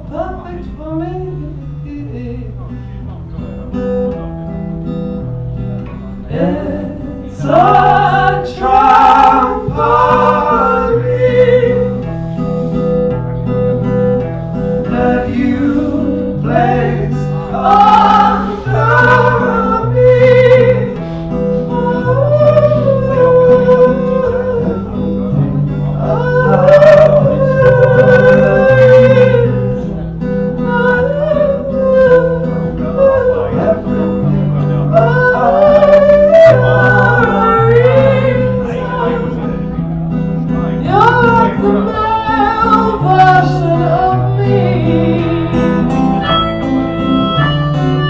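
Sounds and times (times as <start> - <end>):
live band music: 2.8 - 48.0
person singing without words: 6.3 - 12.1, 14.9 - 30.0, 30.6 - 39.5, 40.8 - 46.4.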